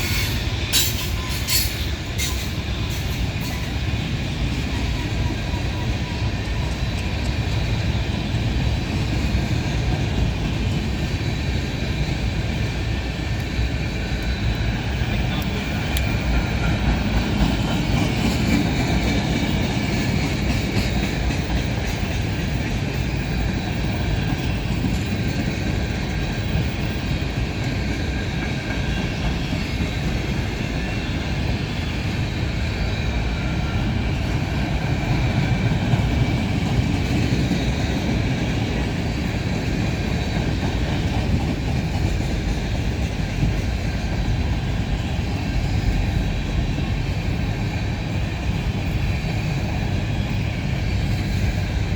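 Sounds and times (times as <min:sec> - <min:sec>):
freight train wheels rumbling: 0:00.0 - 0:51.9.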